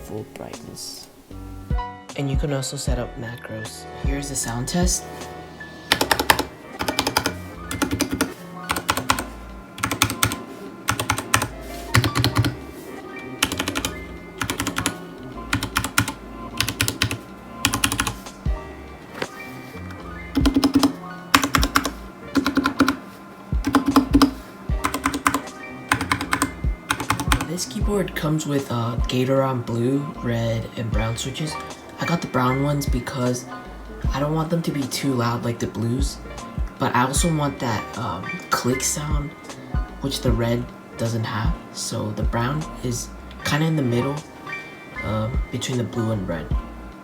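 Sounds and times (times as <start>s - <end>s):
background music: 0.0s - 47.0s
mechanical keyboard typing: 5.9s - 12.6s, 13.4s - 18.2s, 20.3s - 23.0s, 23.6s - 27.5s.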